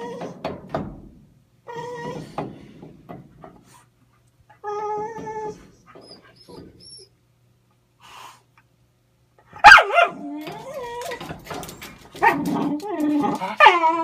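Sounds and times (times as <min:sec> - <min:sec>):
dog whining: 0:00.0 - 0:00.4, 0:01.6 - 0:02.4, 0:04.5 - 0:07.2, 0:09.6 - 0:11.6, 0:12.2 - 0:14.0
dog yelping: 0:09.6 - 0:11.3, 0:12.2 - 0:14.0.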